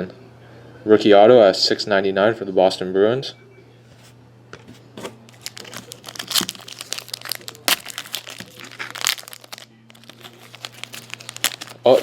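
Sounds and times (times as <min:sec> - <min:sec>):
plastic packaging crinkling: 0:05.3 - 0:12.0.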